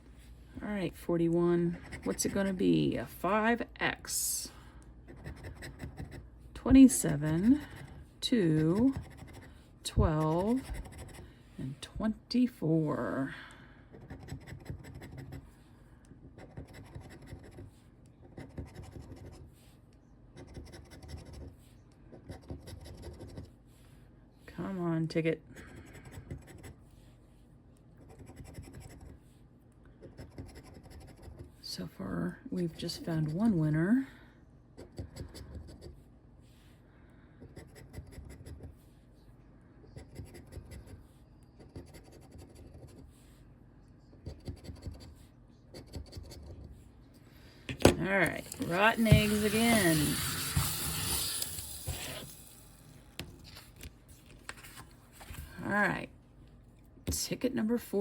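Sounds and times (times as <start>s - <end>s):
scratching lottery ticket: 5.1s - 11.3s, 14.0s - 15.6s, 16.3s - 19.8s, 28.0s - 29.3s, 30.0s - 31.7s, 40.0s - 43.3s, 48.0s - 55.3s
lottery ticket being scratched: 8.6s - 11.2s, 47.7s - 53.9s.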